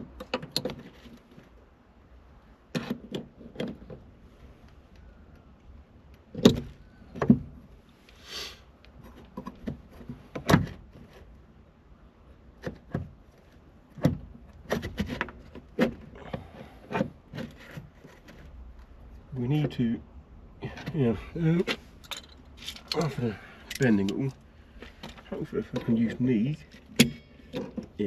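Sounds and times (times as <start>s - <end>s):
clicks and knocks of metal and plastic: 0.0s - 1.6s, 2.7s - 4.1s, 6.1s - 7.7s, 8.9s - 11.3s, 12.5s - 18.9s, 21.6s - 28.0s
brief hiss: 8.1s - 8.6s.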